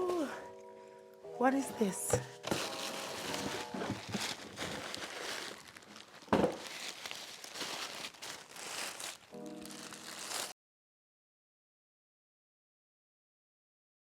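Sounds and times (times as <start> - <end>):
packaging rustling and crinkling: 1.8 - 10.6.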